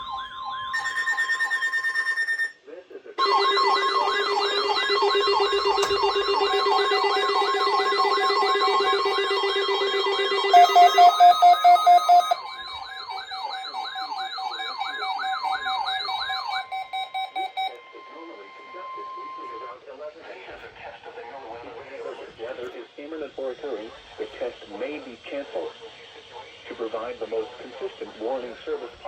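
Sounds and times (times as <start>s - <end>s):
loud pulsed beeps: 0.0s - 2.6s, 3.2s - 19.8s
steady high alert tone: 0.0s - 2.6s, 3.2s - 19.9s
wailing siren: 0.0s - 2.6s, 3.2s - 19.8s.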